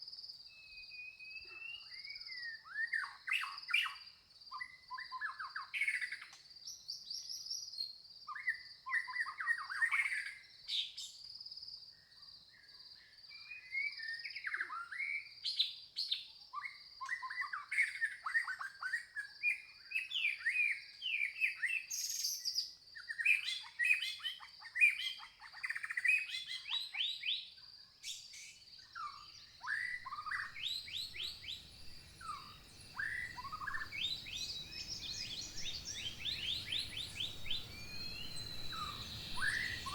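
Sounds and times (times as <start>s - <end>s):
songbirds chirping and singing: 28.1s - 39.9s
low rushing noise: 31.0s - 39.9s.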